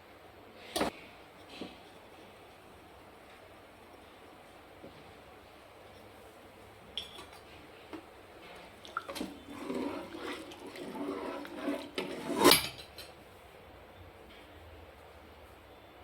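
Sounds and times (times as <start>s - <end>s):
liquid sloshing and pouring: 8.4s - 13.0s.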